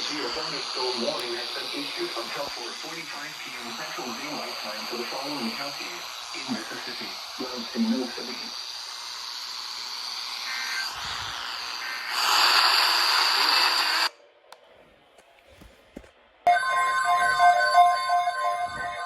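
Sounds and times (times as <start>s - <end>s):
radio static hiss: 0.0s - 14.1s
loud ringing electronic sound: 16.5s - 19.0s.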